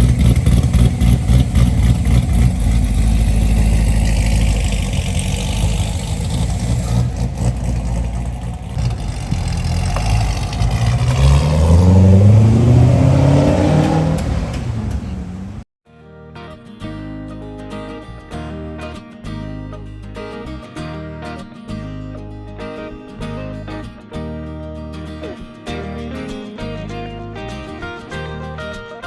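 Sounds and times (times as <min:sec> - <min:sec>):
car engine revving: 0:00.0 - 0:15.7.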